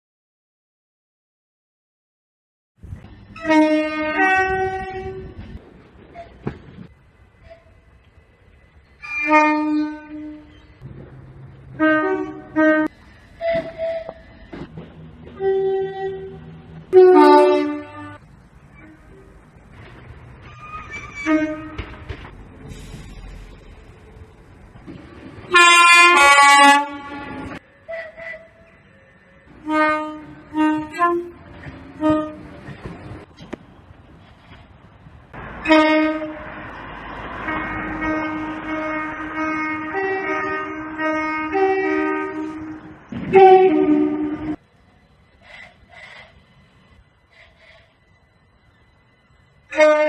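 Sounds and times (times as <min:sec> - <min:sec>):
train horn blasts: 0:03.3 - 0:06.4, 0:09.0 - 0:10.8, 0:11.8 - 0:14.7, 0:15.3 - 0:19.3, 0:20.6 - 0:22.1, 0:25.5 - 0:32.9, 0:35.6 - 0:36.6, 0:37.3 - 0:44.6, 0:49.6 - 0:50.0.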